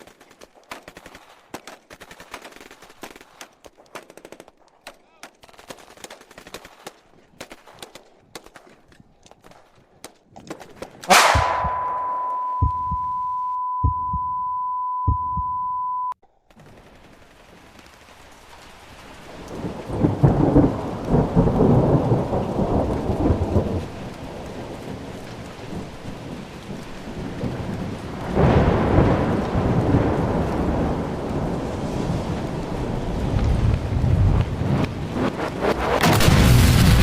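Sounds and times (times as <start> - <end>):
dull thumps: 11.1 - 14.4
steady high beep: 11.1 - 16.2.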